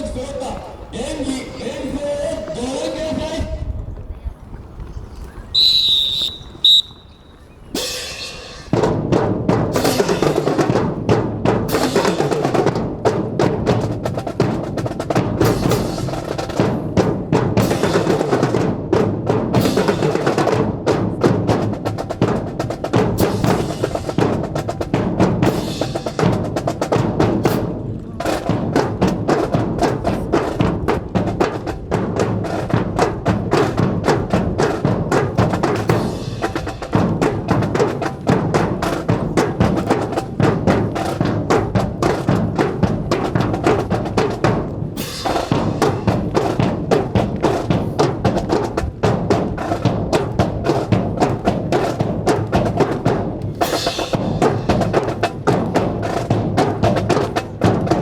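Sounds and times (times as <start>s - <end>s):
whistle blowing: 5.5s - 8.6s
marching band playing: 5.5s - 58.0s
snare and bass drums cadence: 5.5s - 58.0s.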